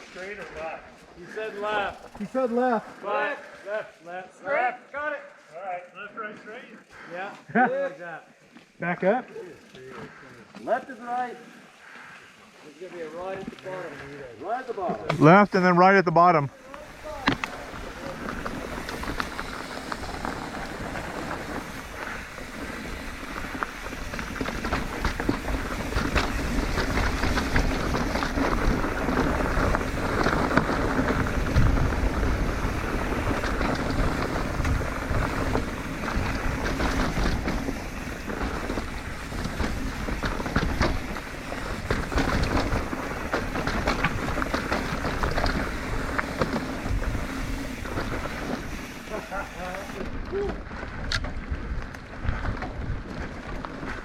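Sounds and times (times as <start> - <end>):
bike tyres on dirt trail: 0.0 - 54.0
bike knocks and rattles: 17.1 - 54.0
wind buffeting microphone: 18.2 - 46.2.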